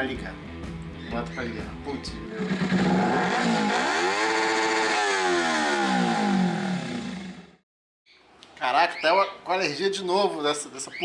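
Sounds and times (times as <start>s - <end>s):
engine revving: 2.0s - 7.6s.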